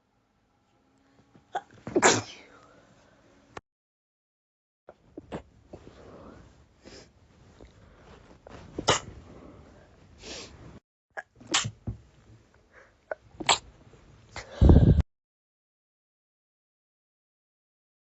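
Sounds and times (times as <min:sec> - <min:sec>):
person sneezing: 0:01.5 - 0:02.6, 0:08.8 - 0:09.1, 0:11.5 - 0:11.8, 0:13.4 - 0:13.7.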